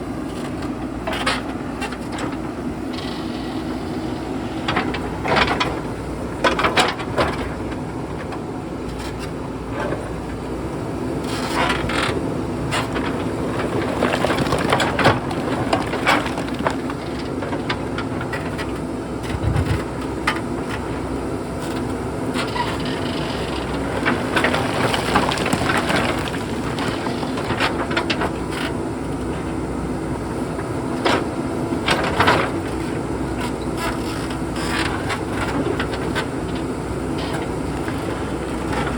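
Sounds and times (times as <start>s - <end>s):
diesel engine running under load: 0.0s - 38.9s
bucket scraping rock and stones: 12.8s - 17.9s, 23.6s - 27.9s.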